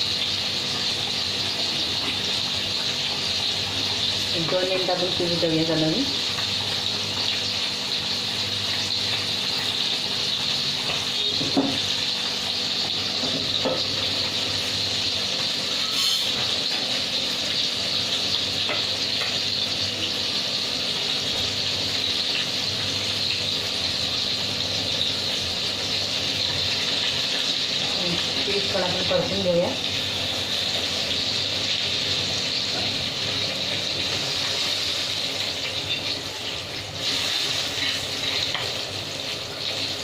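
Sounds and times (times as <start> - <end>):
fish sizzling in a pan: 0.0 - 40.0.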